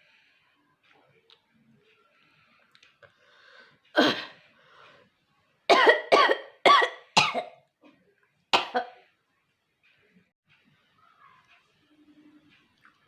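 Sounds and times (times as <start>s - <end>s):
woman coughing: 4.0s - 4.4s, 5.7s - 7.6s, 8.6s - 9.0s.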